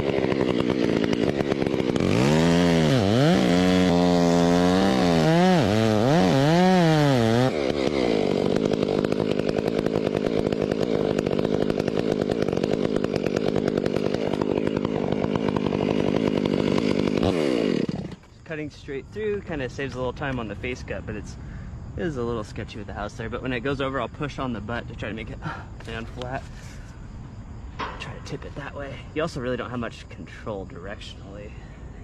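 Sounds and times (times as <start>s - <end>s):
chainsaw cutting through trunk: 0.0s - 18.4s.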